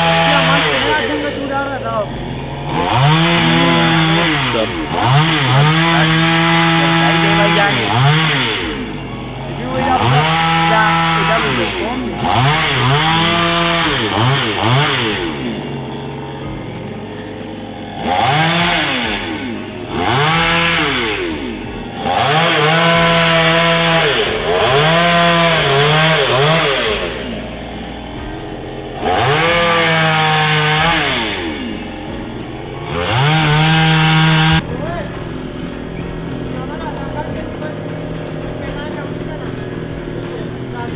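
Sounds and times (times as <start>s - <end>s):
chainsaw revving: 0.0s - 40.9s.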